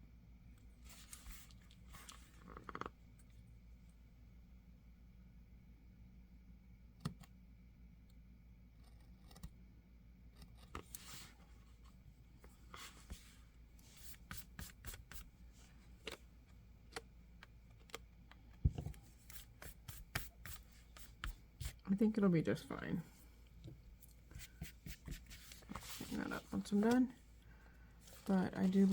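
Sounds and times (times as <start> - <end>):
soft rustling swishes: 23.9 - 27.4.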